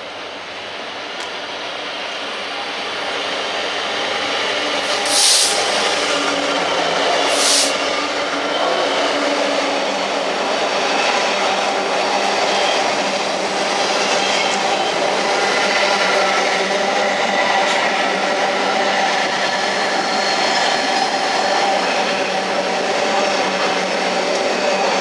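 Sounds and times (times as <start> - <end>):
train mechanical rumble: 0.0 - 8.4
train held tones: 4.7 - 8.9
short hisses: 4.8 - 6.3, 7.2 - 7.8.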